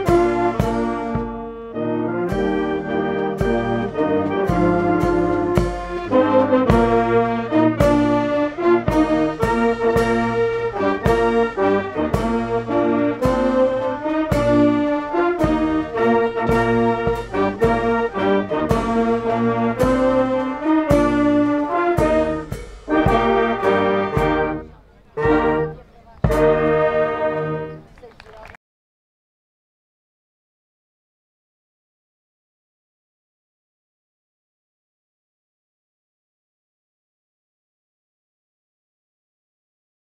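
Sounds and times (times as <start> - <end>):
brass band playing: 0.0 - 27.9.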